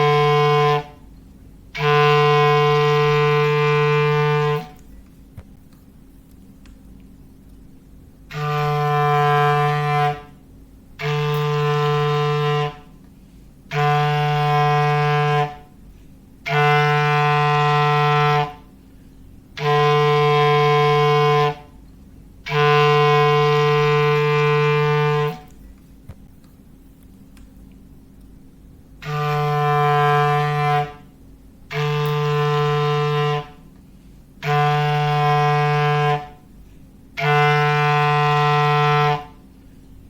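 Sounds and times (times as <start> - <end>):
low clarinet foghorn blasts: 0.0 - 1.1, 1.7 - 4.8, 8.2 - 18.8, 19.5 - 21.8, 22.4 - 25.6, 29.0 - 39.6.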